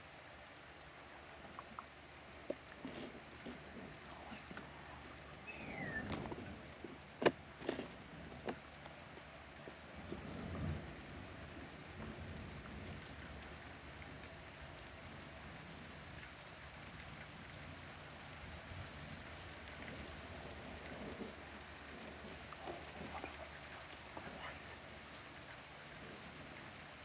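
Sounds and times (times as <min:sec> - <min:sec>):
steady rain falling: 0:00.0 - 0:27.0
water dripping: 0:00.0 - 0:27.0
thunder rumbling: 0:09.6 - 0:14.2.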